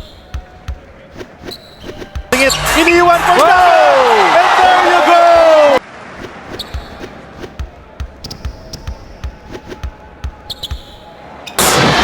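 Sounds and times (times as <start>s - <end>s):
sneaker squeaks: 0.0s - 2.4s, 6.5s - 11.6s.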